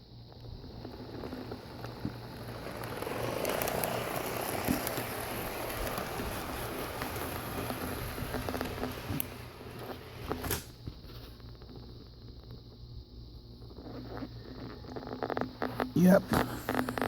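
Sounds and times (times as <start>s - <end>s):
model train rolling rumble: 0.3s - 10.7s.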